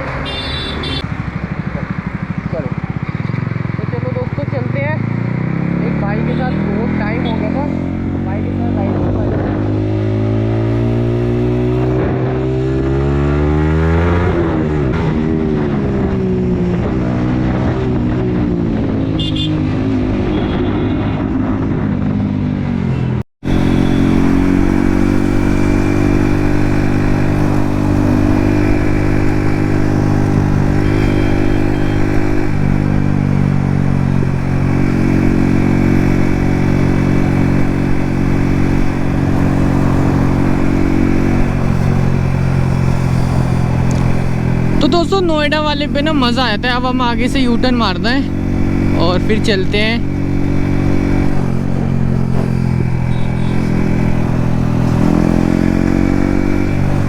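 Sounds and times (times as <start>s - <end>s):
motorcycle engine revving: 0.0s - 57.0s.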